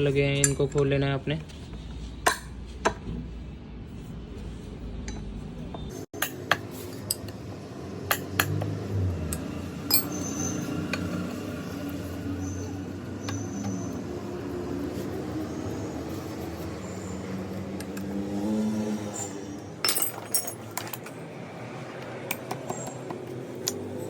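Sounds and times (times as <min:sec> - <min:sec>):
wrench clinking on metal nuts: 0:09.3 - 0:11.1, 0:19.8 - 0:21.1.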